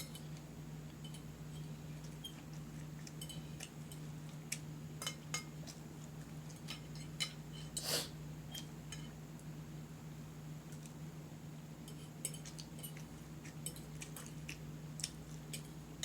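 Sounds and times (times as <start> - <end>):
low steady hum: 0.0 - 16.0
cutlery clinking on a plate: 6.5 - 7.9.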